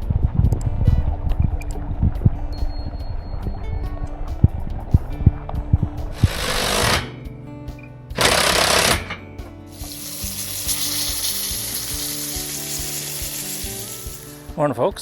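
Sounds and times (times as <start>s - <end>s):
background music: 0.0s - 15.0s
steady hiss: 9.8s - 14.6s.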